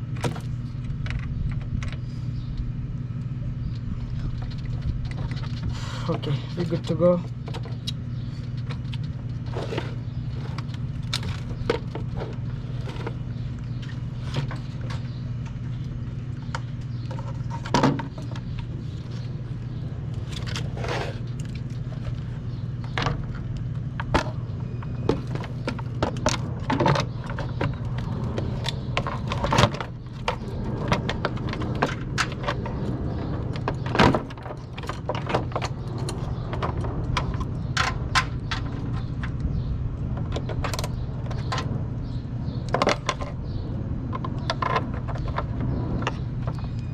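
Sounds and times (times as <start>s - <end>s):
low hum: 0.0s - 46.9s
tools and parts clicking and rattling: 20.2s - 39.5s, 40.2s - 41.7s.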